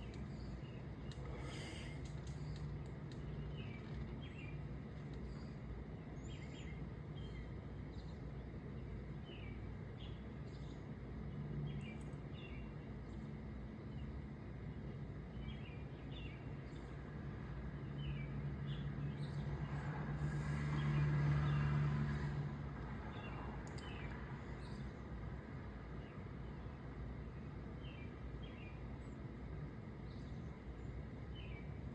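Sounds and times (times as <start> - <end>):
low background hum: 0.0 - 31.9
vehicle passing: 17.9 - 24.4.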